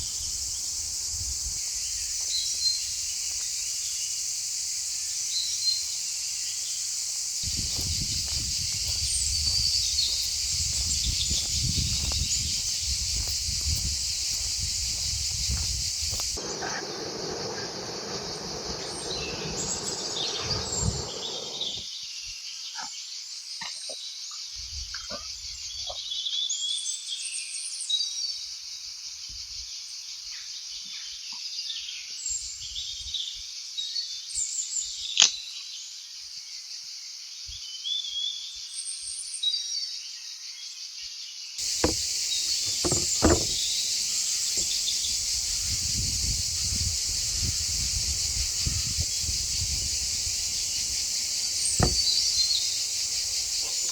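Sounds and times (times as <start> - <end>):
insect chorus: 0.0 - 26.7, 27.9 - 38.7, 40.0 - 53.9
light clicks and knocks: 41.6 - 44.9, 51.8 - 52.5
bird chirps: 41.6 - 53.9.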